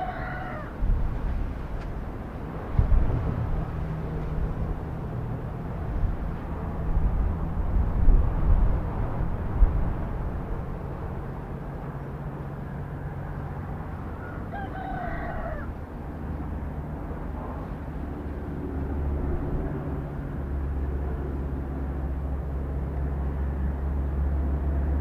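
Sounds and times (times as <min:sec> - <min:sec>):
rooster crowing: 0:00.0 - 0:00.8, 0:13.0 - 0:15.8.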